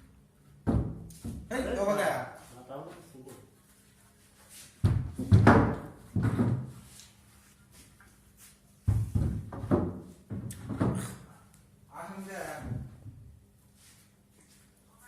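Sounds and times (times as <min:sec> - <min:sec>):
heavy wooden thuds: 0:04.8 - 0:06.8, 0:08.9 - 0:11.2.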